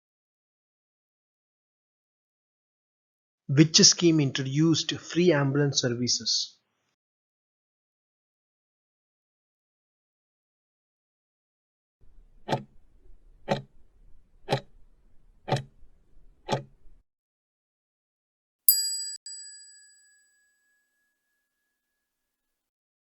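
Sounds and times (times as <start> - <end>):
timer ticks: 12.5 - 12.7, 13.5 - 13.7, 14.5 - 14.7, 15.5 - 15.7, 16.5 - 16.7
bright bell-like ding: 18.7 - 22.0.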